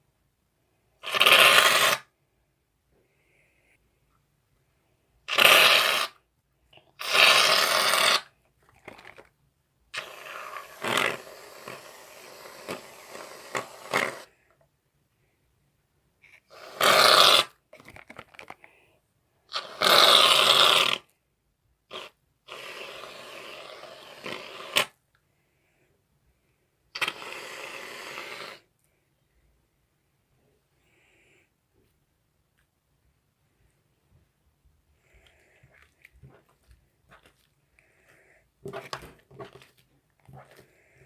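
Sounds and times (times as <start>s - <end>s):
can handling noise: 17.8s - 18.7s.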